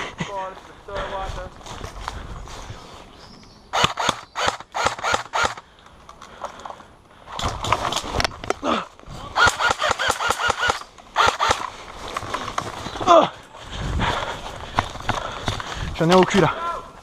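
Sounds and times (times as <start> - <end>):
airsoft rifle shots: 3.7 - 5.6, 9.4 - 11.7.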